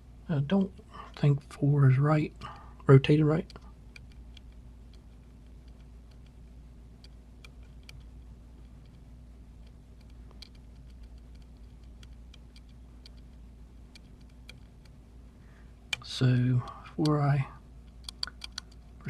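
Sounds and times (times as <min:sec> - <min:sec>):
lock pick clicking on pins: 0:17.8 - 0:19.0.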